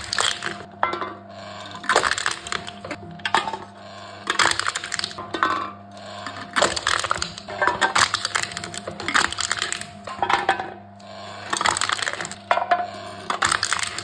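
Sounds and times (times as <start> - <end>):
cans crushed by machine: 0.0 - 0.7, 1.6 - 10.7, 11.3 - 14.0
machine humming: 0.0 - 14.0.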